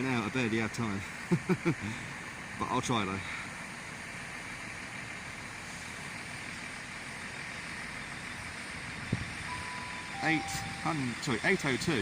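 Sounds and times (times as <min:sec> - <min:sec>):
train rumbling at station: 0:08.7 - 0:12.0
steady beep: 0:09.5 - 0:11.5.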